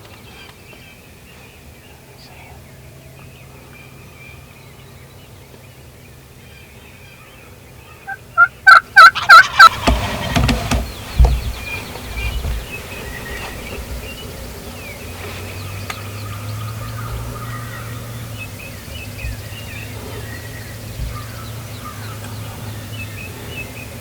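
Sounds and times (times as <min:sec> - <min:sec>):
turkey calling: 0:07.9 - 0:24.0
turkey gobbling: 0:08.0 - 0:10.3, 0:10.9 - 0:24.0.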